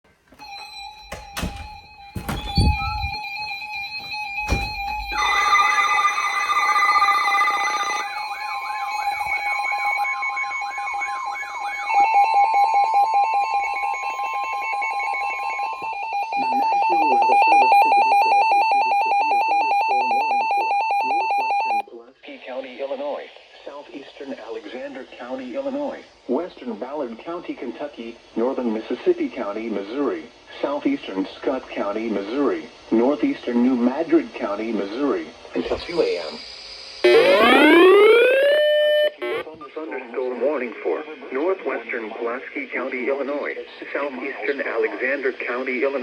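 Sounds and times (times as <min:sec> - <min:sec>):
steady alert tones: 0:00.4 - 0:06.0, 0:37.0 - 0:39.6
warbling siren-like tone: 0:02.1 - 0:11.9, 0:37.0 - 0:39.6
rapid beeping: 0:37.0 - 0:39.6.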